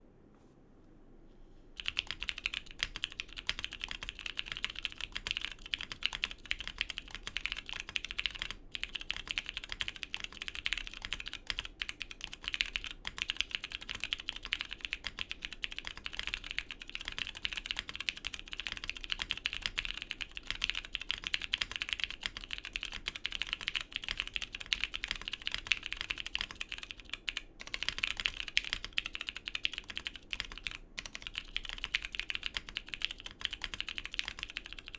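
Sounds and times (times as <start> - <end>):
mechanical keyboard typing: 1.8 - 34.9.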